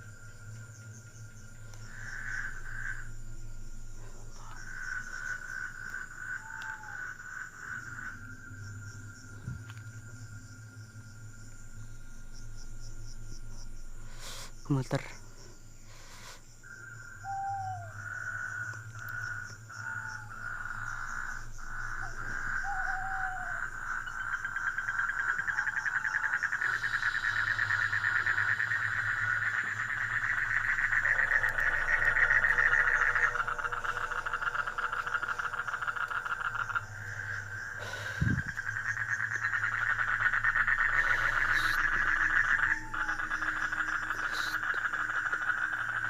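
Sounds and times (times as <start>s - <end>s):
fast-pulsing frog and insect trill: 0.0s - 46.0s.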